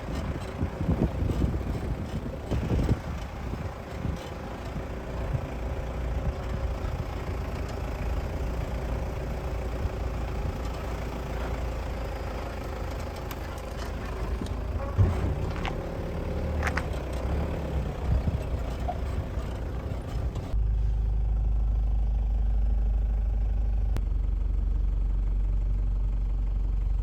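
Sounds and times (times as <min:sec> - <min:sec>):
road rumble: 0:00.0 - 0:27.0
vehicle engine running: 0:00.0 - 0:27.0.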